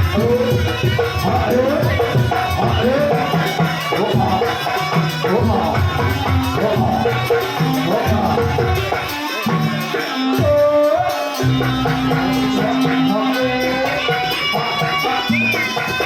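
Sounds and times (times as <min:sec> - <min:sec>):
drums and tuned percussion ensemble: 0:00.0 - 0:16.0.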